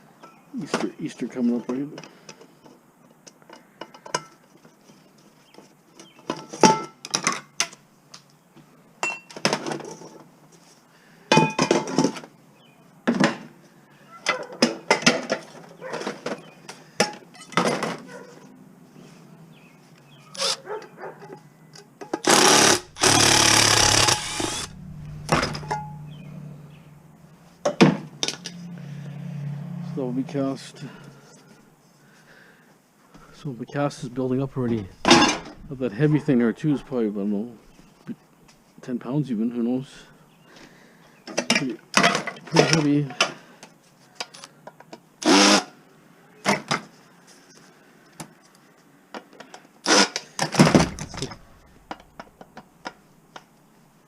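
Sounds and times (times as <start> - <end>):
metal scrap knocks and clanks: 22.1 - 26.4, 34.9 - 35.8, 50.5 - 52.3
loud metal rattling: 22.2 - 27.3, 50.6 - 52.2.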